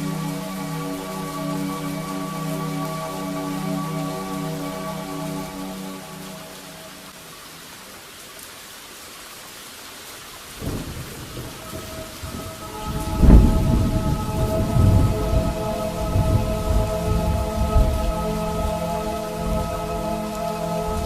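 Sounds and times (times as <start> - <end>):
steady rain: 0.0 - 21.0
loud thunderclap: 10.6 - 15.5
thunder rumbling: 10.6 - 18.8.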